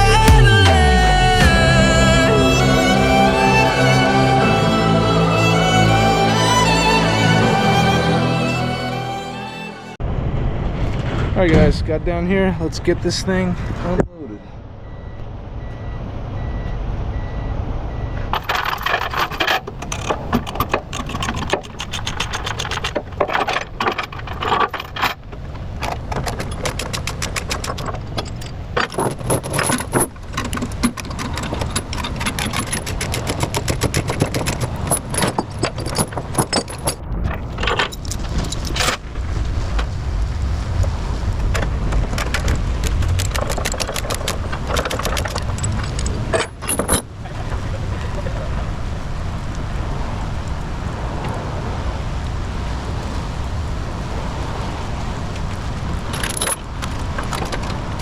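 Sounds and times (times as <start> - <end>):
engine running: 0.0 - 11.4
chains rattling and clanking: 18.3 - 39.0, 43.2 - 47.1, 56.1 - 56.6.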